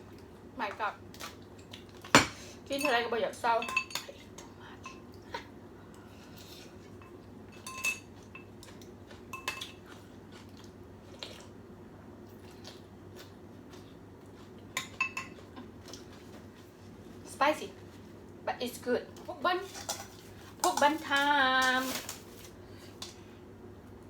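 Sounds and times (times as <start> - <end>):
utensils clinking against a bowl: 1.6 - 5.1, 6.4 - 9.8, 14.8 - 15.6, 19.6 - 22.2.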